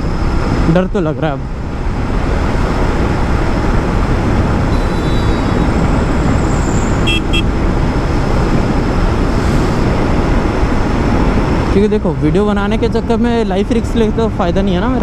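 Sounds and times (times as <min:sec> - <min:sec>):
road noise: 0:01.4 - 0:14.3
short high beeps: 0:04.7 - 0:07.5.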